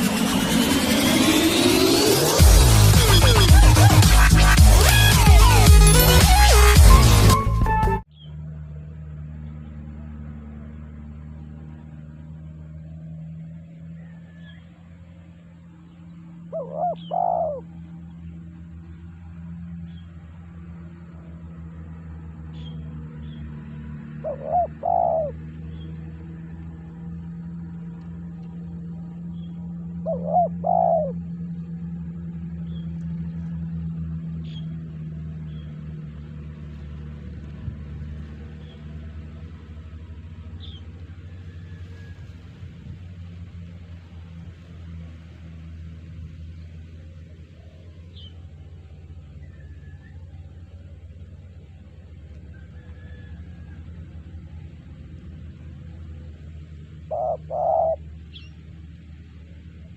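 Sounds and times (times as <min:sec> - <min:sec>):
steady low hum: 0:00.0 - 0:59.9
small birds chirping: 0:08.1 - 0:08.5, 0:13.9 - 0:27.5, 0:29.0 - 0:31.6, 0:34.3 - 0:42.4, 0:46.3 - 0:51.8, 0:54.4 - 0:59.9
dove cooing: 0:16.5 - 0:17.7, 0:24.1 - 0:25.7, 0:30.0 - 0:31.3, 0:56.0 - 0:58.6.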